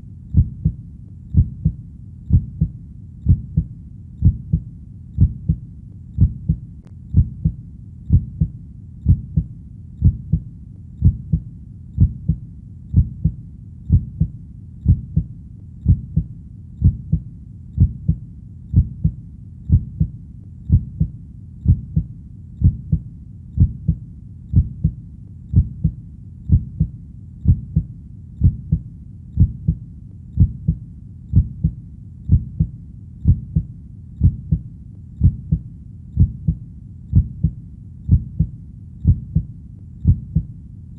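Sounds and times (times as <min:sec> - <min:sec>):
heartbeat: 0:00.0 - 0:40.6
faint low rumble: 0:00.0 - 0:40.9.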